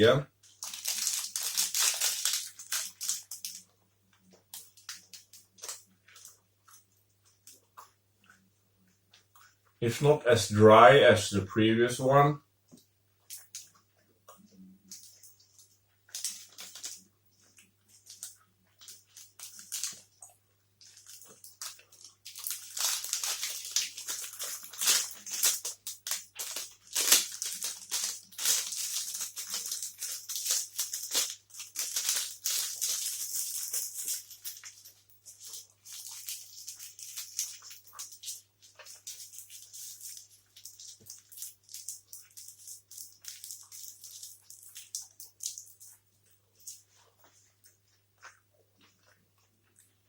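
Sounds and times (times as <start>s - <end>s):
person chewing wetly: 12.7s - 28.5s, 29.1s - 50.0s.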